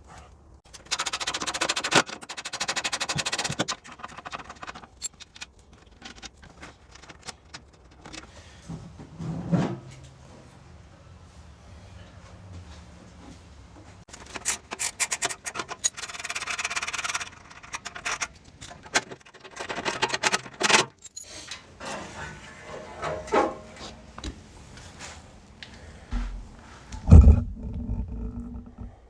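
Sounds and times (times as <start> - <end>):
tools clicking and clattering: 0.7 - 8.4, 14.1 - 21.6
rasping metal scrape: 14.1 - 19.6.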